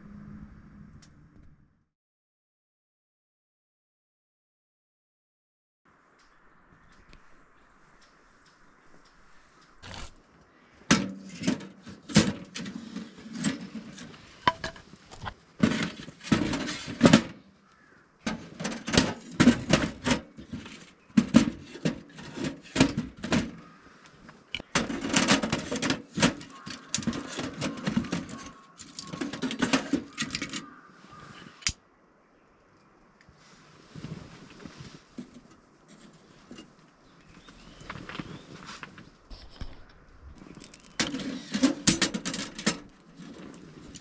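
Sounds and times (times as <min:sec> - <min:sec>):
firewood and stove parts clattering: 0:10.9 - 0:17.4, 0:18.2 - 0:30.8, 0:40.4 - 0:44.0.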